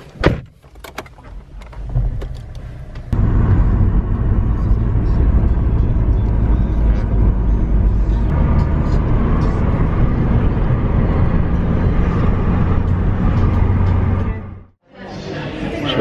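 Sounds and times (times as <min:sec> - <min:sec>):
car road and engine rumble: 0:00.0 - 0:14.8.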